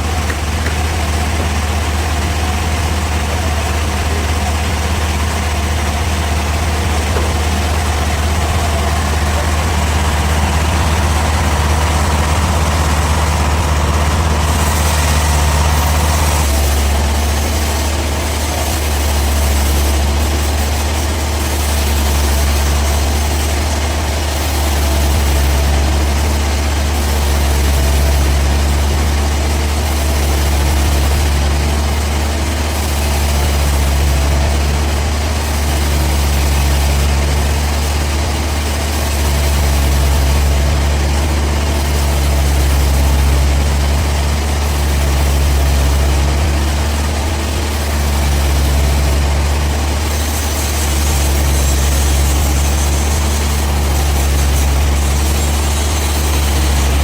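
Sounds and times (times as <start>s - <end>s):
sawmill machinery humming: 0.0s - 57.0s.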